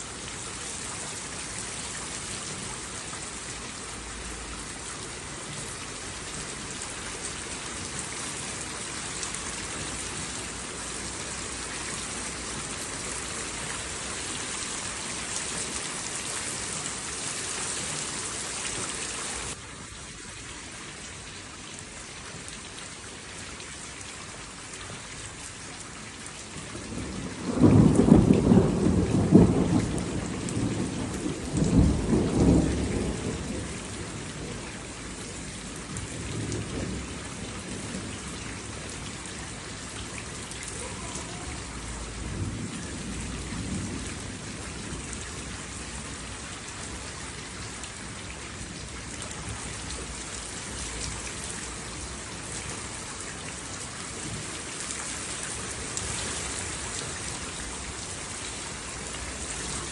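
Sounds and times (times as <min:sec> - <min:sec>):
heavy rain hissing: 0:00.0 - 0:19.6, 0:26.8 - 0:59.9
thunder rumbling: 0:26.8 - 0:38.9.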